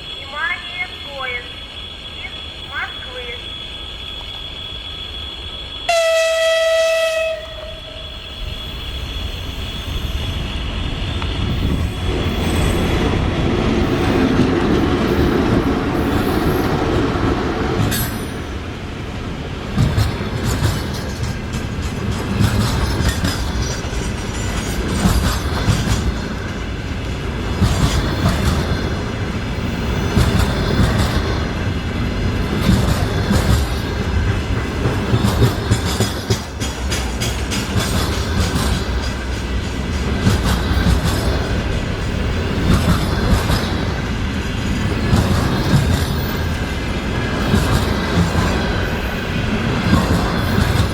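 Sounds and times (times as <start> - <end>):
train passing: 0.0 - 50.9
locomotive horn blast: 5.9 - 11.8
wheels clicking over rail joints: 19.6 - 50.9.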